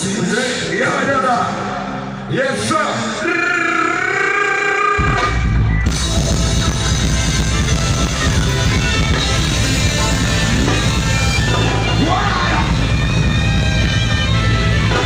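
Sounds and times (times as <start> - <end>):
live band playing: 0.0 - 15.0.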